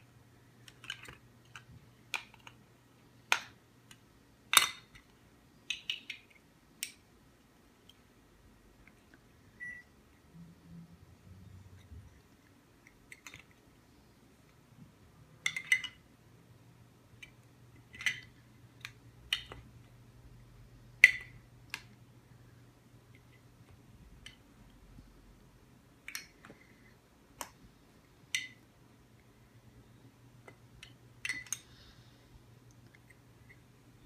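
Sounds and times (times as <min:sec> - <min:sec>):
plastic bricks clicking: 0:00.6 - 0:02.6, 0:03.3 - 0:07.0, 0:12.8 - 0:13.6, 0:15.4 - 0:16.0, 0:17.2 - 0:19.7.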